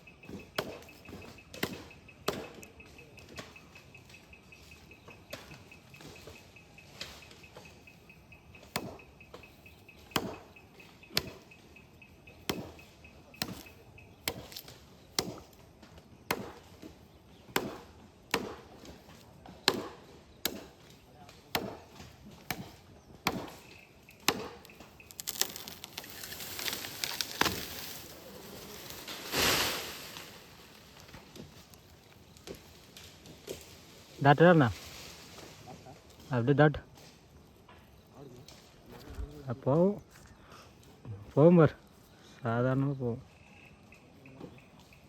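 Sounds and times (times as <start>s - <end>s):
blade chopping wood: 0.3s - 3.6s, 8.6s - 9.4s, 10.0s - 11.5s, 12.4s - 15.6s, 16.3s - 28.1s
crash of leaves and branches: 24.8s - 36.5s.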